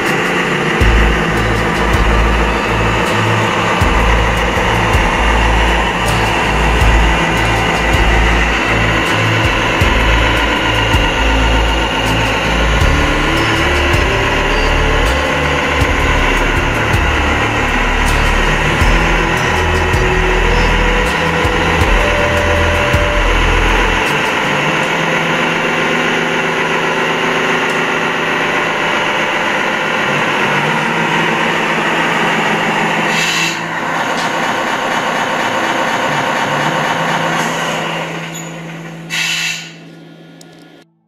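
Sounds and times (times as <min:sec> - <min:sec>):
deep rumble: 0:00.0 - 0:33.1
short hiss: 0:39.1 - 0:39.8.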